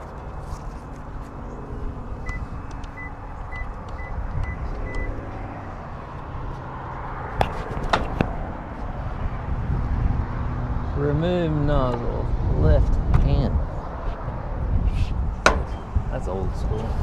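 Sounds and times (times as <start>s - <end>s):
low steady rumble: 0.0s - 17.0s
keypad beeps: 2.3s - 5.2s.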